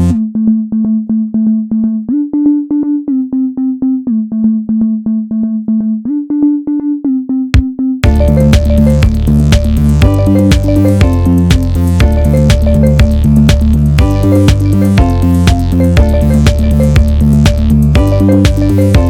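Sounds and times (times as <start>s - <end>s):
electronic beat with drums: 0.0s - 0.2s, 7.6s - 19.0s
held synth tone: 8.0s - 19.0s.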